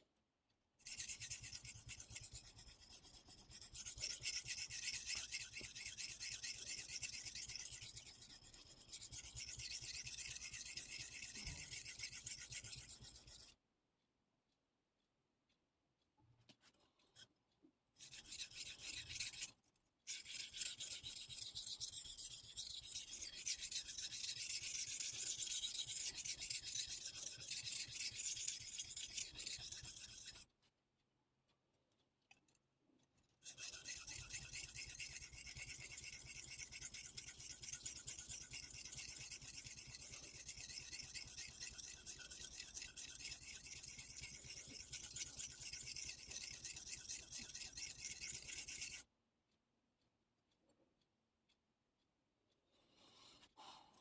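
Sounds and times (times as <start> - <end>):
knife blade rubbing on abrasive: 20.1 - 30.4, 33.5 - 49.0.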